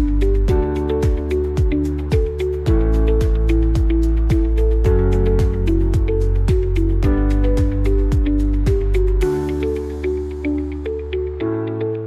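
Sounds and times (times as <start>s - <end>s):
deep kick drum: 0.0s - 9.4s.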